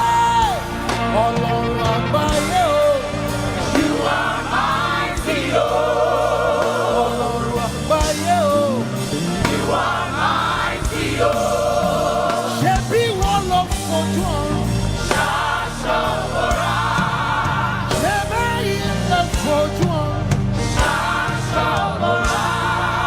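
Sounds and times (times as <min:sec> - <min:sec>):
choir singing over band: 0:00.0 - 0:23.0
solo voice singing: 0:12.3 - 0:14.7, 0:17.9 - 0:20.4.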